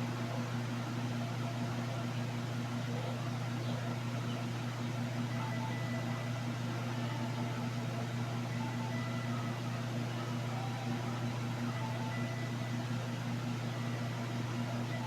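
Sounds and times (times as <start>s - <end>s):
low motor hum: 0.0s - 15.0s
faint pulsing tone: 5.2s - 15.0s.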